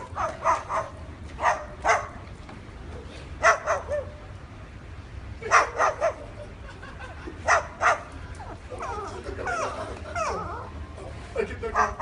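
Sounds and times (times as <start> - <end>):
high bark-like yaps: 0.1 - 2.2, 3.4 - 4.2, 5.4 - 6.2.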